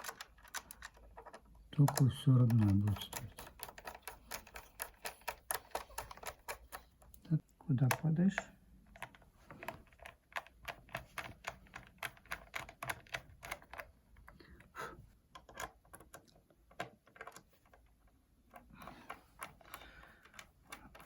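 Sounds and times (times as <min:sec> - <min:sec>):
screwdriver clicking and tapping: 0:00.0 - 0:07.1.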